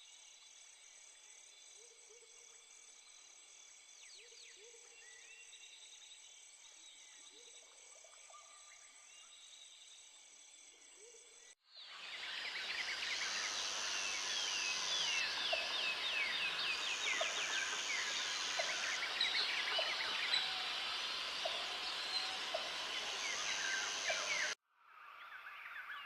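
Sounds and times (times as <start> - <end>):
high insect drone: 11.8 - 24.6
birds calling and chirping: 12.0 - 24.6.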